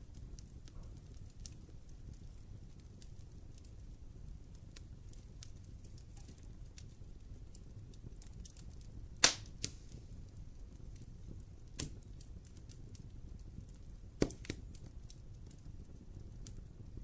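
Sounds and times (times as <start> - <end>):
low rumble of flames: 0.0 - 17.0
wood fire crackling: 0.0 - 17.0
loud sharp pop of fire: 9.2 - 10.1, 11.7 - 12.1, 14.1 - 14.8.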